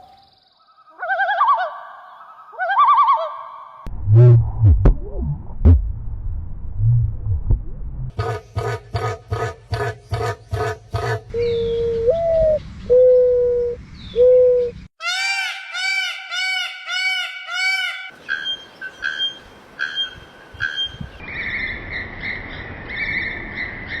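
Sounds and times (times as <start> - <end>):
repeated arching bird notes: 8.1 - 24.0
low hooting bird calls: 8.2 - 14.9.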